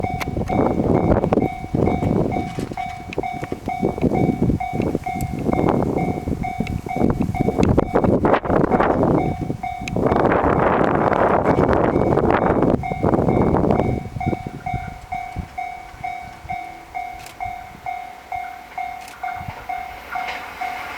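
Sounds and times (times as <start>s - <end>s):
level crossing bell ringing: 0.0s - 20.9s
passing train rumble: 0.0s - 20.9s
train wheels clacking on rails: 0.0s - 20.9s.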